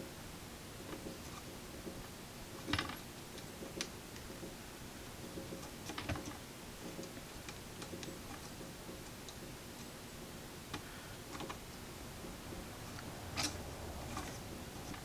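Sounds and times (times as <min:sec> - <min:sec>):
low steady hum: 0:09.0 - 0:15.0.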